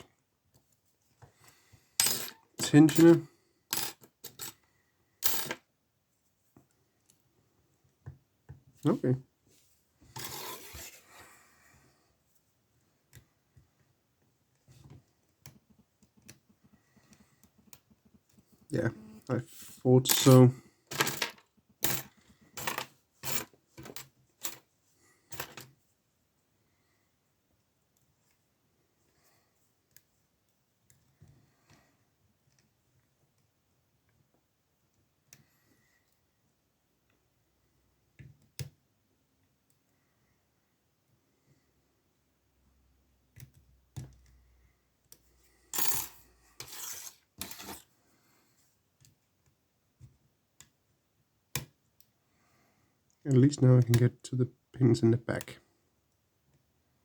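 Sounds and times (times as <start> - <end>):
metal tools clinking and jingling: 45.8 - 47.8.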